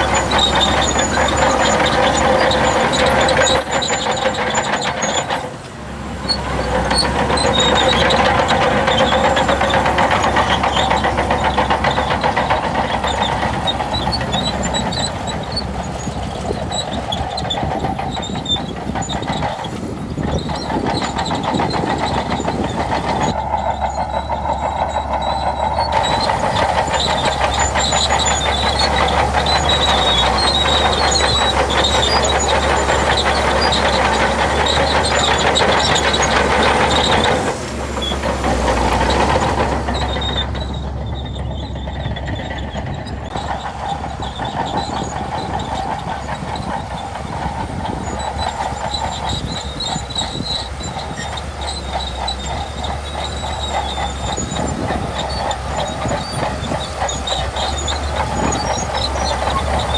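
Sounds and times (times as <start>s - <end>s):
bulldozer diesel engine running: 0.0s - 59.9s.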